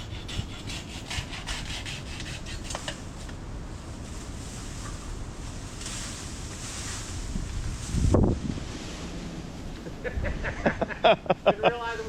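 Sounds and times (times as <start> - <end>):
saw cutting bamboo: 0.0 - 3.0.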